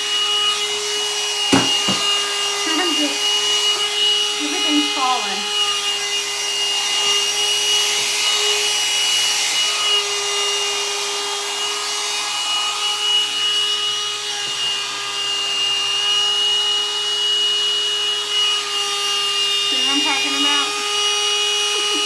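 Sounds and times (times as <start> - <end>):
hot-air dryer brush running: 0.0 - 22.0.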